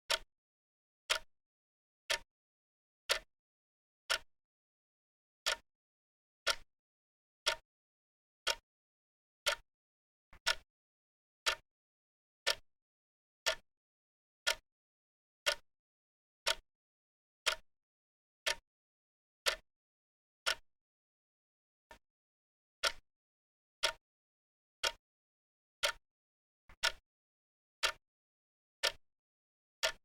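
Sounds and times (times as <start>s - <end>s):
clock ticking: 0.1s - 0.3s, 2.1s - 2.3s, 3.1s - 3.3s, 7.4s - 7.6s, 10.4s - 10.6s, 13.4s - 13.6s, 26.8s - 27.0s.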